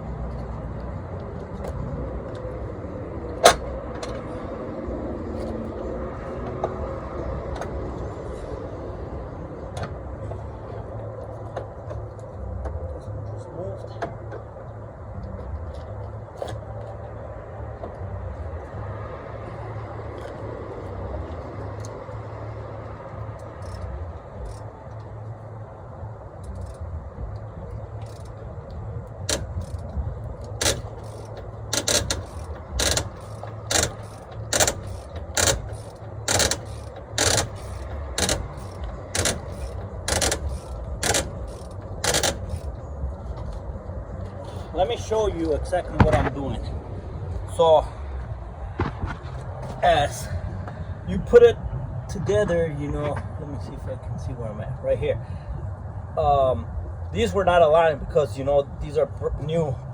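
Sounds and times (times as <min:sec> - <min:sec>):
steady low hum: 0:00.0 - 0:59.9
wrench clicking: 0:20.1 - 0:25.4, 0:26.4 - 0:43.6.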